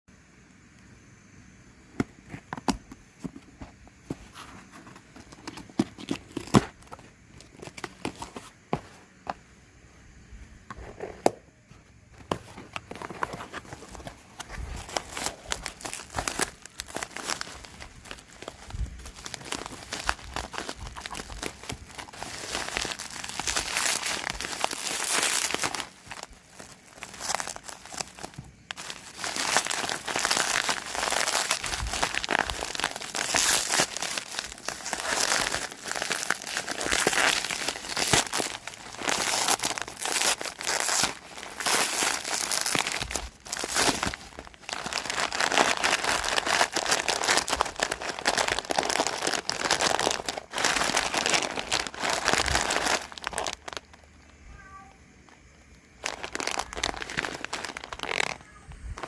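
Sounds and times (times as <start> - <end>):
packaging crumpling and tearing: 4.8 - 8.4, 12.3 - 54.1, 56.0 - 59.0.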